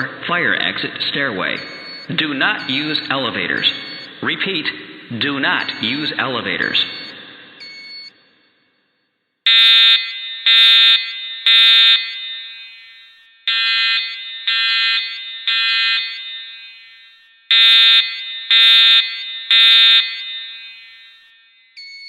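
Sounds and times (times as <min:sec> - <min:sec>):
fire alarm horn tones: 0:09.5 - 0:22.0.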